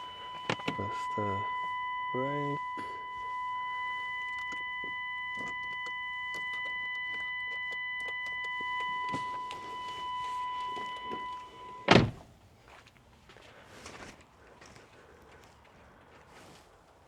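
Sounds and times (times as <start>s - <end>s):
car electronic warning tone: 0.0s - 12.2s
loud thump: 11.9s - 12.2s.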